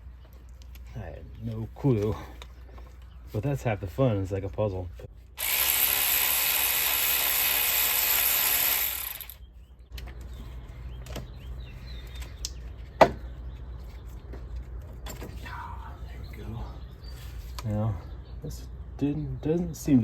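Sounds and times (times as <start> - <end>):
power tool running: 5.4 - 9.4.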